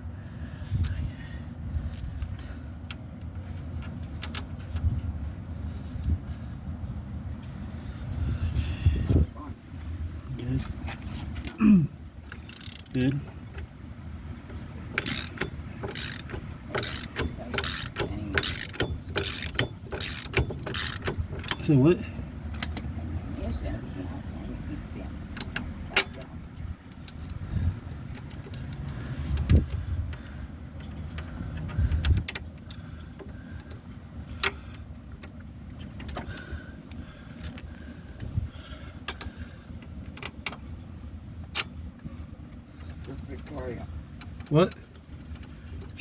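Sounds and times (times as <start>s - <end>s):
ratchet wrench clicking: 12.3s - 13.2s, 15.0s - 21.7s.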